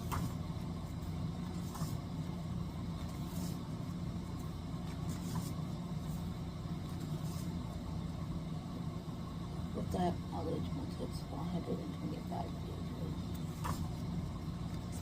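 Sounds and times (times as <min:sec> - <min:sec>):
book pages rustling: 0:00.0 - 0:02.1, 0:03.0 - 0:07.6, 0:13.3 - 0:15.0
steady low hum: 0:00.0 - 0:15.0.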